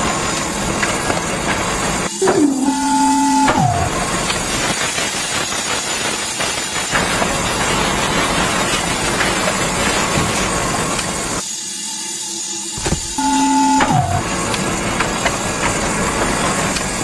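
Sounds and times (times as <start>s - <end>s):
horn-like tone gliding down: 13.0s - 14.2s.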